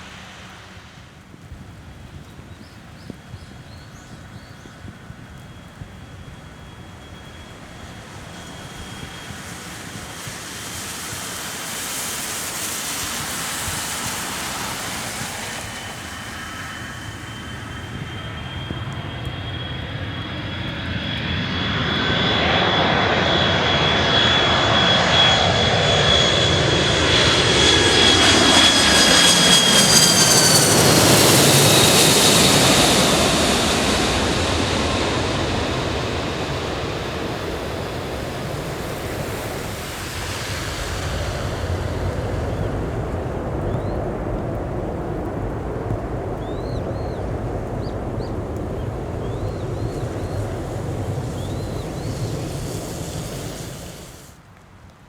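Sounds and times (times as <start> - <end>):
jet aircraft rush: 0.0 - 54.5
jet engines high whine: 0.0 - 54.5.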